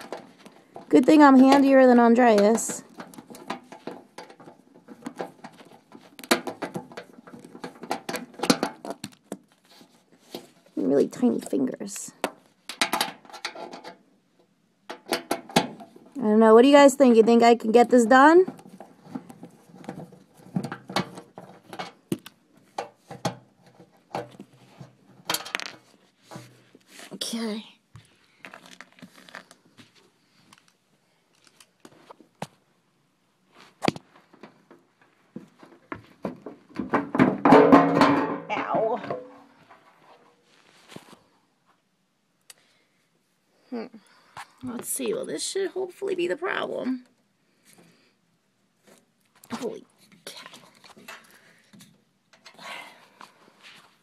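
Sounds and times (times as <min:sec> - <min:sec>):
tools and parts clicking and tapping: 0:00.0 - 0:09.5, 0:12.2 - 0:16.0, 0:18.5 - 0:25.8, 0:50.9 - 0:52.6.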